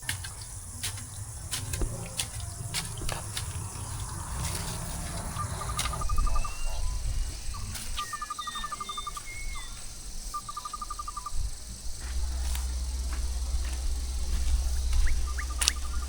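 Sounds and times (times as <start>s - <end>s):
low rumble: 0.0s - 8.1s, 9.5s - 16.0s
steady hiss: 0.0s - 16.0s
sliding bird whistles: 0.4s - 9.8s
rapid pulsed trill: 10.0s - 16.0s.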